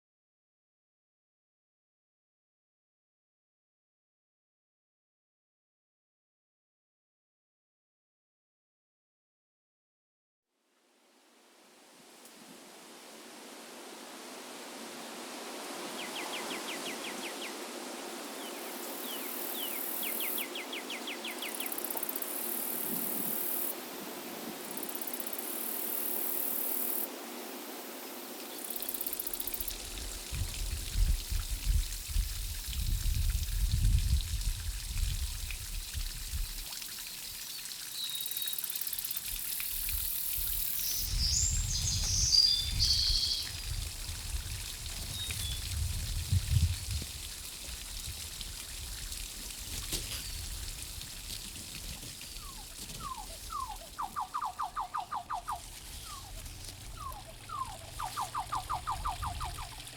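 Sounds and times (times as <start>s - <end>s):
water trickling and pouring: 14.9s - 59.9s.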